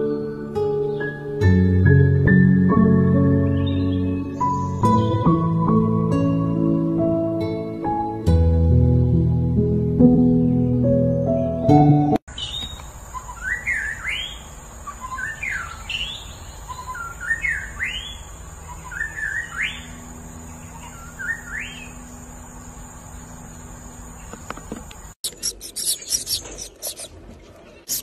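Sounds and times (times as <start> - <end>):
songbird whistling phrase: 12.4 - 20.0, 20.6 - 22.0.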